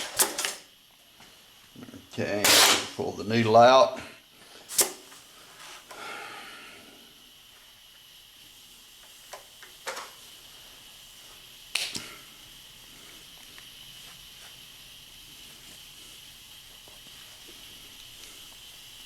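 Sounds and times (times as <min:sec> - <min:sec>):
compressed air hissing: 0:00.0 - 0:19.0.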